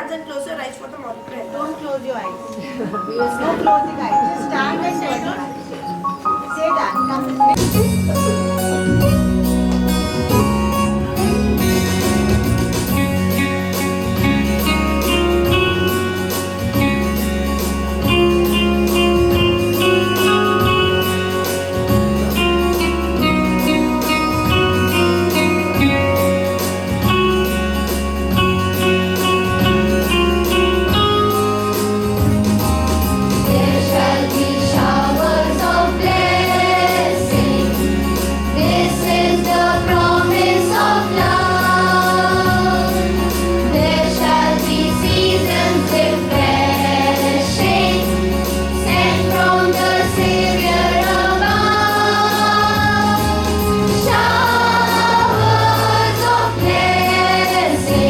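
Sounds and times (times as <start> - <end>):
instrumental accompaniment with beat: 2.4 - 58.0
choir singing a hymn: 33.3 - 58.0.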